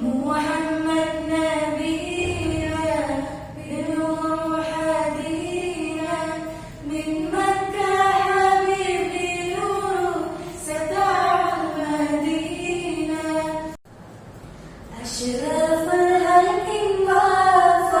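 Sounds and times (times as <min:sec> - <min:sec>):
girls singing: 0:00.0 - 0:13.8, 0:14.9 - 0:18.0.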